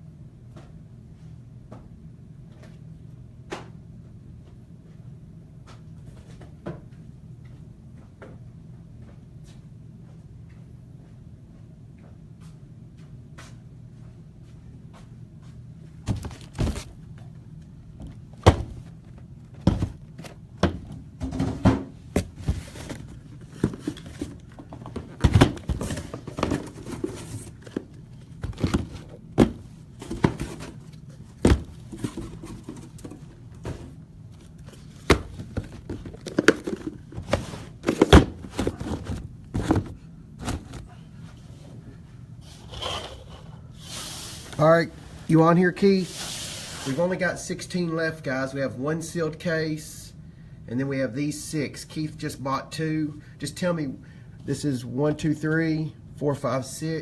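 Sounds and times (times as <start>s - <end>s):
card boxes clicking and thunking: 16.0s - 17.2s, 18.0s - 40.9s.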